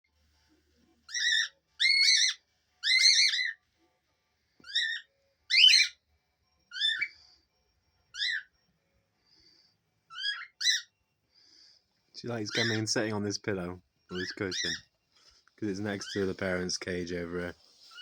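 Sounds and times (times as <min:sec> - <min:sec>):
young dove squeaky calls: 0:01.1 - 0:03.6, 0:04.6 - 0:06.0, 0:06.7 - 0:07.2, 0:08.1 - 0:08.5, 0:10.1 - 0:10.9, 0:12.4 - 0:12.9, 0:14.1 - 0:14.8.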